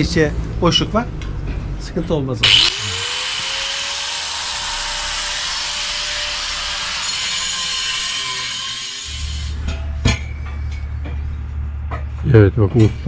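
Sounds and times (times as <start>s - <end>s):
power tool whining and cutting: 2.4s - 9.5s.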